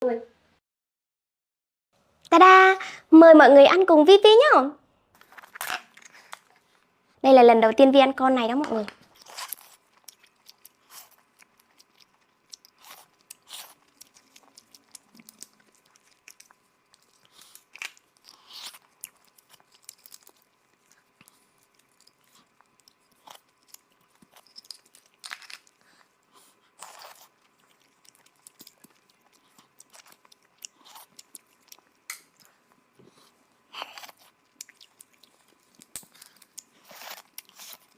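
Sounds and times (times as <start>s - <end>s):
quiet chewing: 9.0s - 37.9s
crunching bites: 9.1s - 25.8s.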